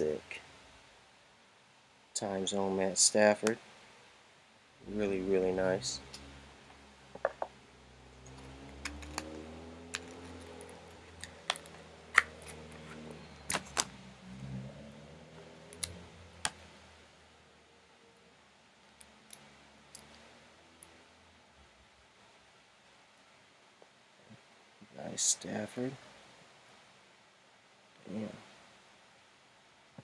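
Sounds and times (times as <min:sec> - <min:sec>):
trading cards clicking and tapping: 0:08.3 - 0:13.9.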